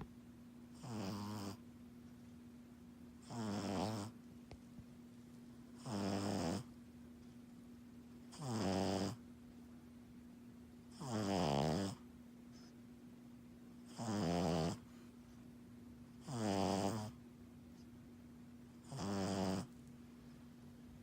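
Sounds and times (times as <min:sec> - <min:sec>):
puppy snoring: 0:00.7 - 0:01.7, 0:03.2 - 0:04.2, 0:05.8 - 0:06.8, 0:08.2 - 0:09.3, 0:10.9 - 0:12.8, 0:13.8 - 0:15.1, 0:16.2 - 0:17.2, 0:18.8 - 0:19.8.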